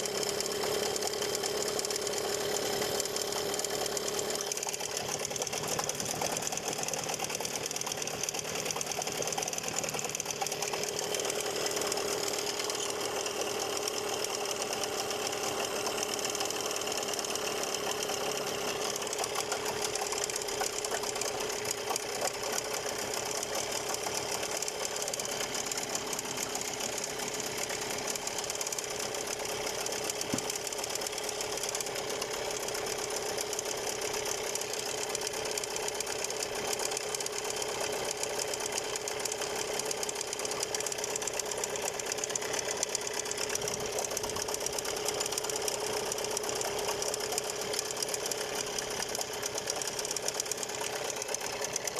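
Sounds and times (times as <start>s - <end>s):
outboard motor running: 0.0s - 51.9s.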